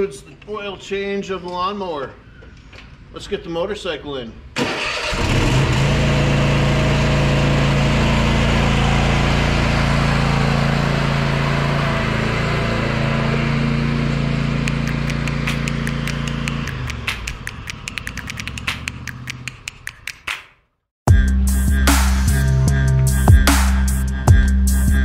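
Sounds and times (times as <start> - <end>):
engine idling: 4.8 - 18.8
sharp evenly spaced ticks: 14.6 - 20.6.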